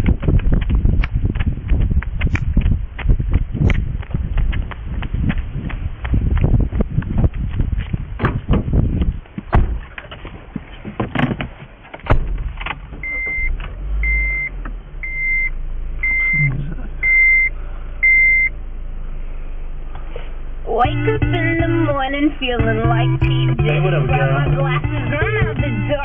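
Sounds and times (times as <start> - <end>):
knocks and thud: 7.2 - 13.5
car engine running low: 11.6 - 26.0
seatbelt reminder beeps: 13.0 - 18.5.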